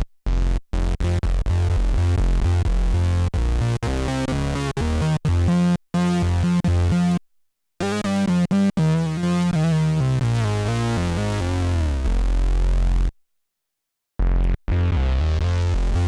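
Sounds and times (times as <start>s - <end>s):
synth bass notes: 0.0s - 7.2s, 7.8s - 13.1s, 14.2s - 16.0s.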